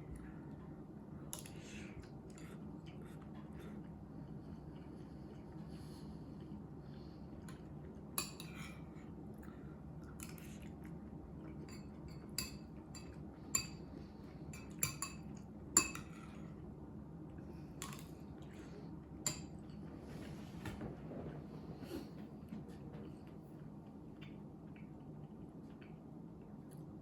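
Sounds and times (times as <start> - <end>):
steady low hum: 0.0 - 27.0
utensils clinking on dishes: 11.6 - 13.8, 14.5 - 16.4.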